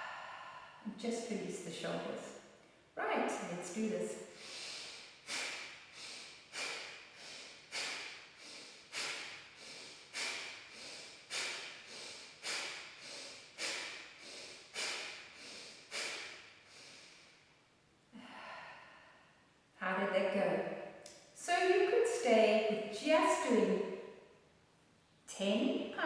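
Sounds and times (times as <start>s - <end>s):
woman inhaling softly: 0.0s - 0.9s, 4.3s - 17.3s
woman exhaling sharply through nose: 4.3s - 17.4s.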